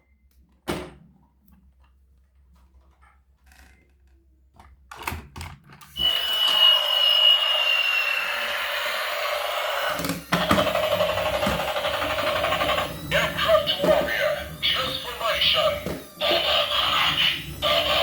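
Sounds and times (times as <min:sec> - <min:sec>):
small electric motor whirring: 0:05.9 - 0:18.0.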